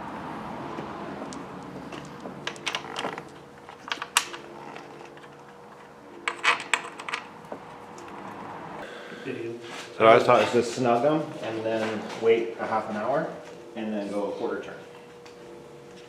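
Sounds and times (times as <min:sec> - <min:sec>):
metal bolts and tools clinking: 0:01.9 - 0:07.3.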